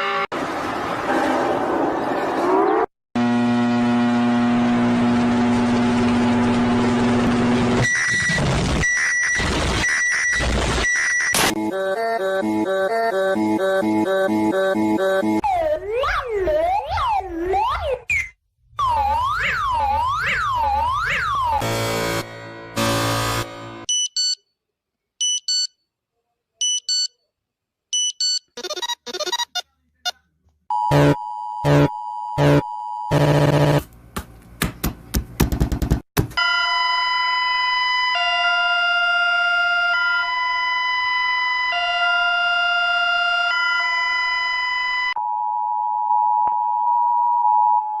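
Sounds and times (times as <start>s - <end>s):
two-tone siren: 7.8s - 15.6s, 18.8s - 23.5s, 30.9s - 33.8s, 36.4s - 45.4s
short electronic beeps: 28.0s - 29.7s.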